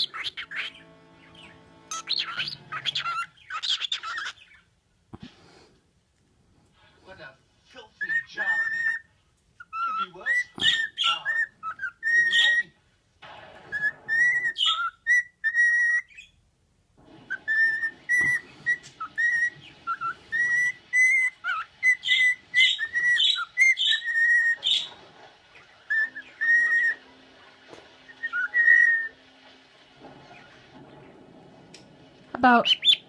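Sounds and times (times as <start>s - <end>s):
pet bird whistling: 1.9s - 4.6s, 8.0s - 12.8s, 13.7s - 16.4s, 17.3s - 24.9s, 25.9s - 27.0s, 28.1s - 29.2s, 32.6s - 33.0s.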